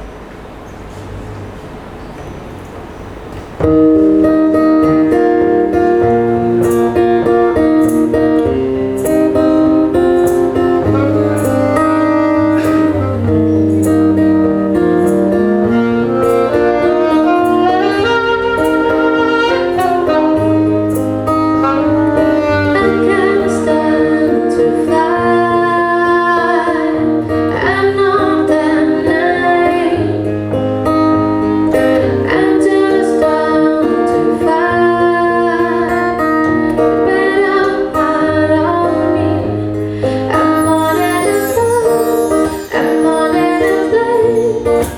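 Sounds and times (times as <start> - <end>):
acoustic guitar strumming: 0.0 - 44.9
woman singing: 21.5 - 30.5, 31.1 - 44.9.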